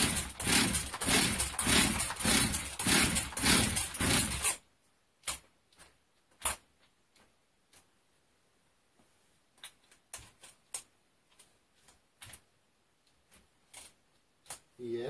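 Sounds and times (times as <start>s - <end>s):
chainsaw engine running unevenly: 0.0s - 4.5s
faint clicks and knocks: 9.0s - 14.8s.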